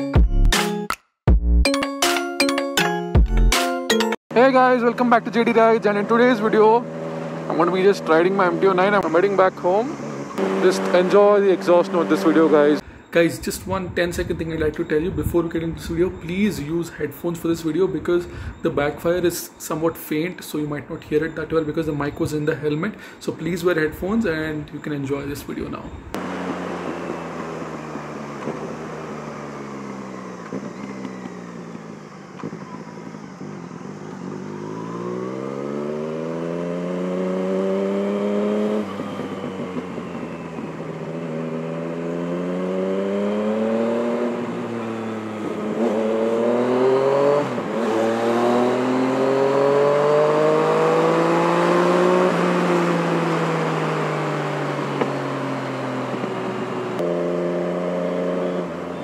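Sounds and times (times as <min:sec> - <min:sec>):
motorcycle engine revving: 0:04.3 - 0:16.6, 0:25.6 - 0:59.0.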